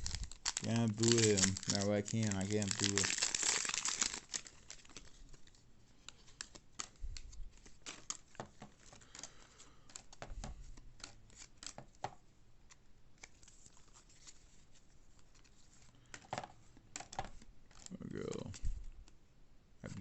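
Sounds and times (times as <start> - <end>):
cards flipped with paper snaps: 6.1 - 14.4.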